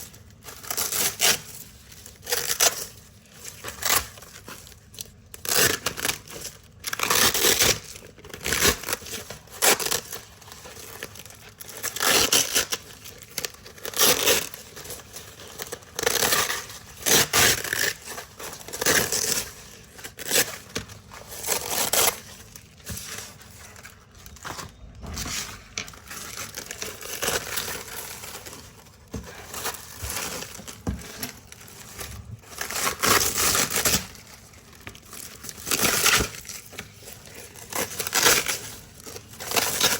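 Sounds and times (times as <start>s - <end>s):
velcro strips ripping apart: 11.8s - 12.8s, 13.8s - 14.6s.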